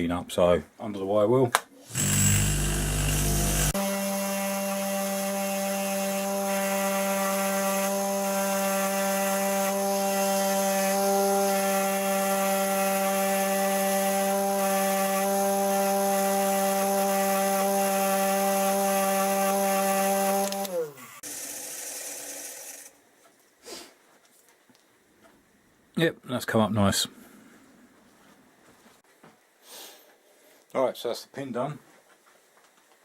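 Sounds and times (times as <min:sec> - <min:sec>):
motor winding down: 0:01.9 - 0:03.8, 0:20.1 - 0:22.9
wire wheel motor humming: 0:01.9 - 0:03.8.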